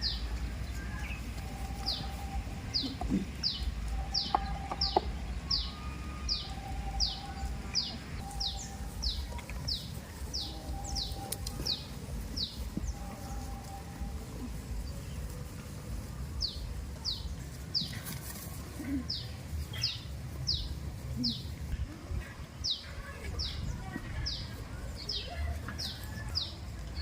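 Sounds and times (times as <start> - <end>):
bird calling: 0.0 - 15.6.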